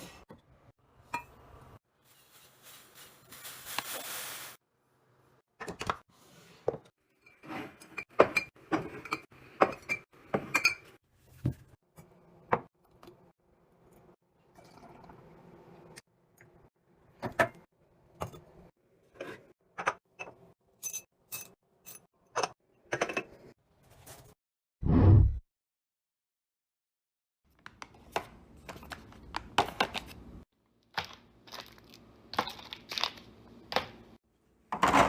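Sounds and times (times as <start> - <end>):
glass jars and bottles clinking: 19.8 - 23.3.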